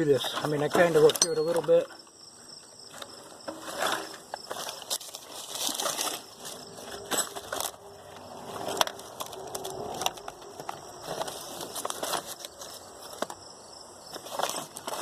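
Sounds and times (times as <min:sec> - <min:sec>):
rustling in a toolbox: 0:00.0 - 0:02.1, 0:02.8 - 0:15.0
metal hand tools clinking: 0:00.3 - 0:02.0.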